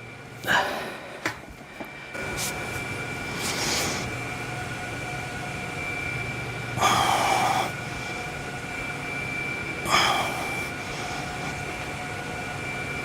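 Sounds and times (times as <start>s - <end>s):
faint steady hum: 0.0s - 13.0s
person exhaling hard: 0.4s - 1.3s, 6.8s - 7.8s, 9.9s - 11.5s.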